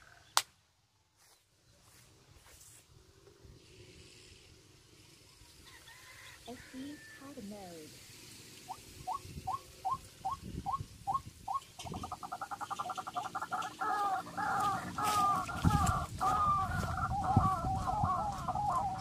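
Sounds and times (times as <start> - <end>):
bird calling: 8.6 - 19.0.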